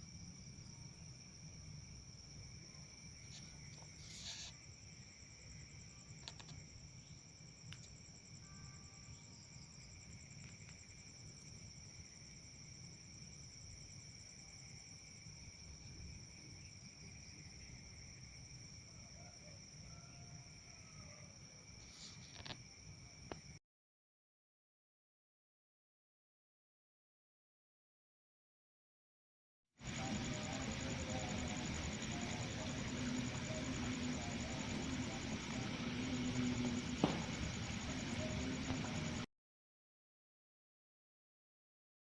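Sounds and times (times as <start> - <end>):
crickets trilling: 0.0 - 23.6, 29.8 - 39.3.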